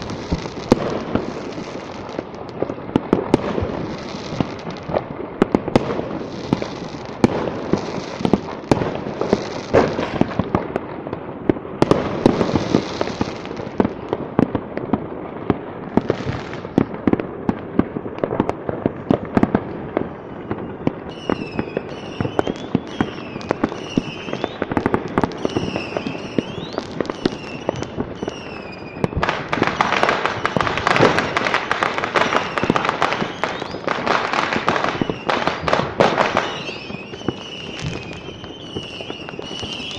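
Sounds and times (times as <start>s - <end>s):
firecrackers popping and banging: 0.0s - 39.9s
firework whistles: 20.1s - 39.9s.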